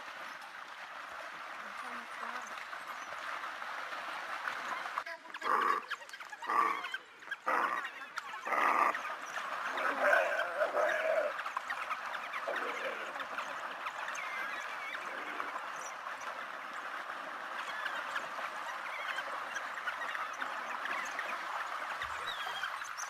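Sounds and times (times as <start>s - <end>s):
wild dogs twittering: 5.4s - 16.0s.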